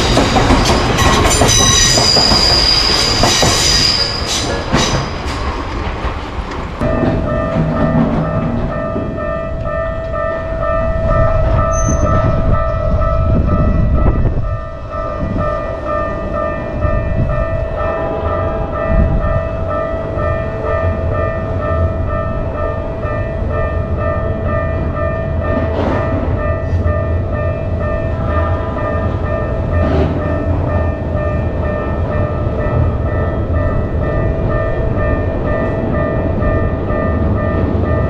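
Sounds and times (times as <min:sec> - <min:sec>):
railroad crossing alarm ringing: 0:00.0 - 0:06.2, 0:06.8 - 0:38.0
passing train rumble: 0:00.0 - 0:38.0.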